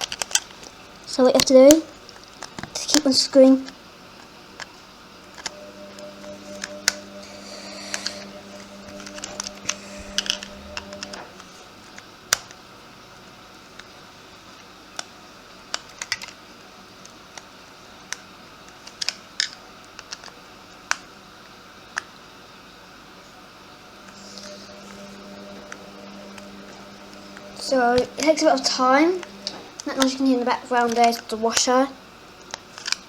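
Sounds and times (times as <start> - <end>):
washing machine humming: 5.5 - 11.9, 23.9 - 31.1.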